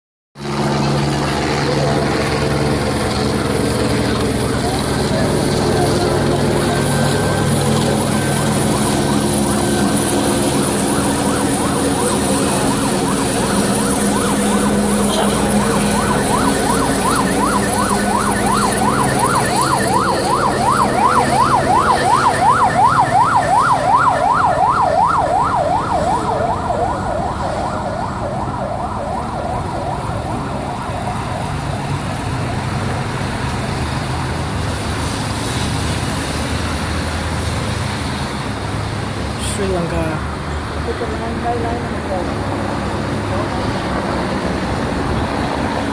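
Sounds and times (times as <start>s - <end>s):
engine and traffic noise: 0.4s - 45.9s
siren yelping: 1.5s - 32.8s.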